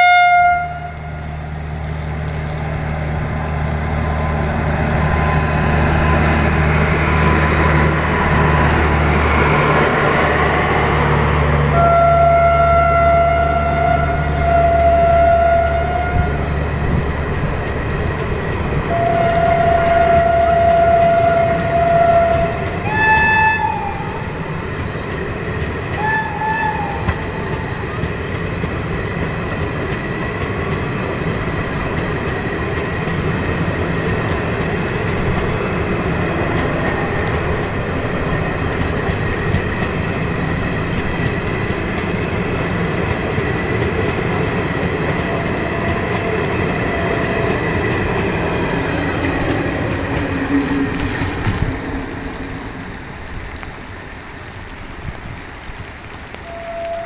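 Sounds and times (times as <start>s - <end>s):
locomotive horn blasts: 0.0s - 1.4s, 11.7s - 16.5s, 18.9s - 24.3s, 26.0s - 27.6s, 56.4s - 57.0s
train running noise: 0.0s - 57.0s.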